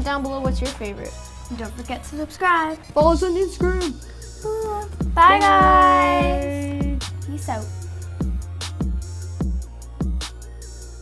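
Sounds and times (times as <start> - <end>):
kick drum: 3.0 - 4.0, 4.7 - 7.2, 8.2 - 10.3
low bass line: 4.6 - 7.3.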